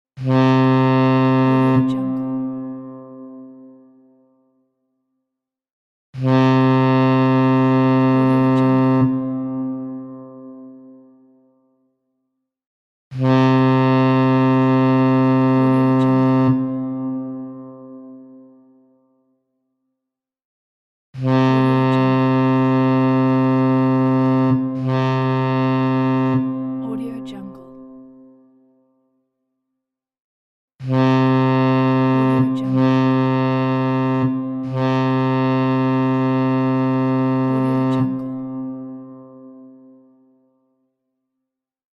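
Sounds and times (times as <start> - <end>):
ship's horn blast: 0.2 - 4.1, 6.2 - 11.4, 13.2 - 18.9, 21.2 - 28.3, 30.8 - 40.2.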